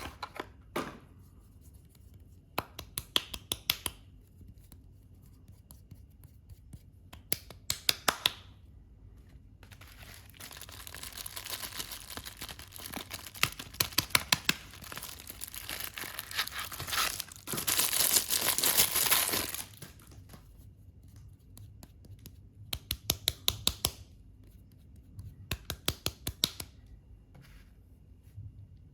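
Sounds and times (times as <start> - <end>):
packaging crinkling: 9.6 - 20.2
packaging tearing: 9.7 - 20.0.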